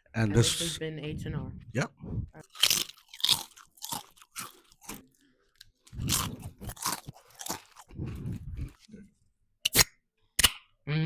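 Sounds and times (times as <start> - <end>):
person crunching potato chips: 2.4 - 8.9.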